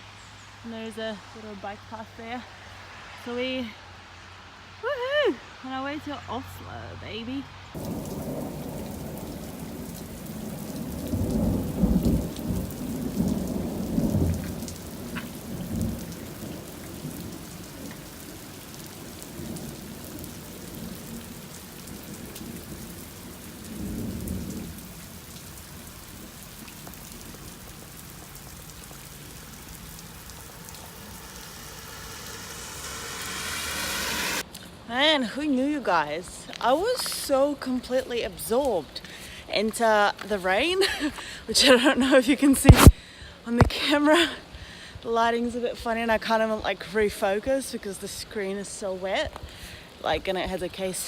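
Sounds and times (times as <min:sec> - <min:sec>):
heavy rain pattering: 0:07.7 - 0:34.8, 0:36.2 - 0:46.9
low rumbles: 0:24.7 - 0:34.5.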